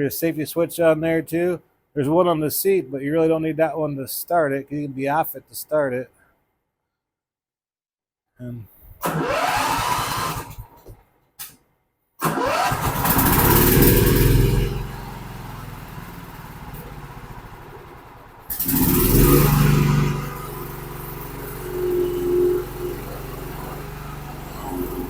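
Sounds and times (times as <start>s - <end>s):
mower engine running: 9.0s - 10.7s, 12.2s - 25.0s
electric starter cranking: 9.0s - 10.9s, 12.2s - 25.0s.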